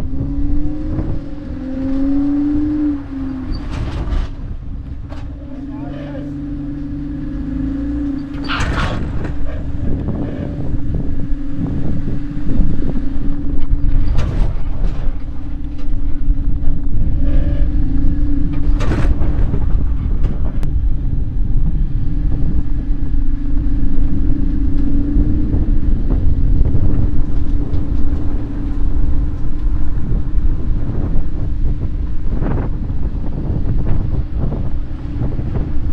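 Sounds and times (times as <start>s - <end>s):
caravan road noise rumble: 0.0s - 35.9s
wind buffeting microphone: 0.0s - 35.9s.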